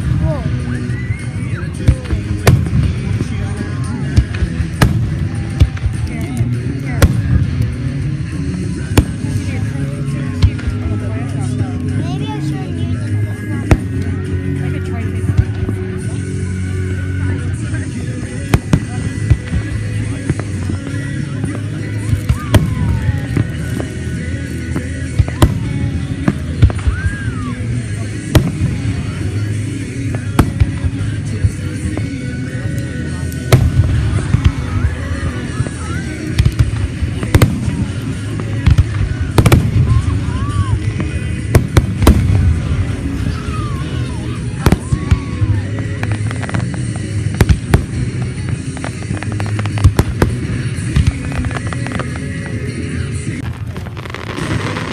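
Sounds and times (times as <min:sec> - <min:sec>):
fireworks bangs: 0:00.0 - 0:11.5, 0:17.6 - 0:54.9
low rumble: 0:00.0 - 0:54.9
music: 0:00.0 - 0:54.9
firework whistles: 0:00.4 - 0:01.6
fireworks pops: 0:18.4 - 0:24.1, 0:32.8 - 0:42.8, 0:44.6 - 0:52.6.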